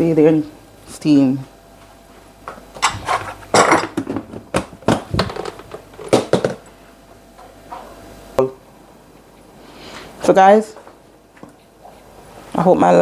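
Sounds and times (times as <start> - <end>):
pots and utensils clattering: 2.8 - 4.4.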